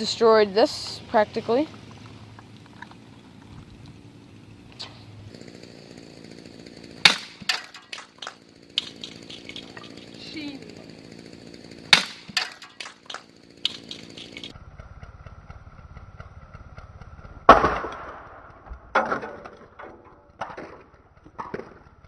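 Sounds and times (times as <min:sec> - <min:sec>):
bat striking plastic toy car: 0:07.0 - 0:09.7, 0:11.9 - 0:14.4.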